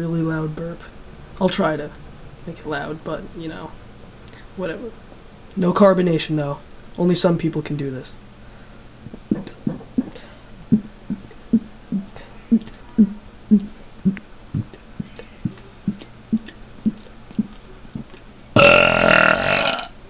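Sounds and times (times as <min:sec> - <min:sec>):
man gulping air: 0:09.0 - 0:19.9
man burping loudly: 0:18.6 - 0:19.9.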